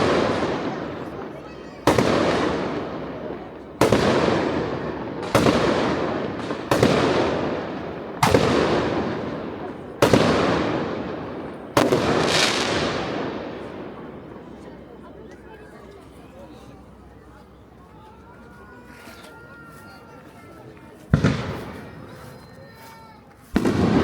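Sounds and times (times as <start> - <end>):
firework shells booming: 0.0 - 14.5, 21.1 - 22.1, 23.5 - 24.0.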